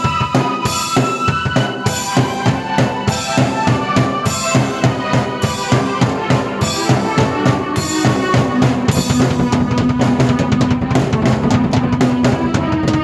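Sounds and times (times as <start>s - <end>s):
keyboard chords and melody: 0.0s - 12.8s
drum kit beat: 0.0s - 13.0s.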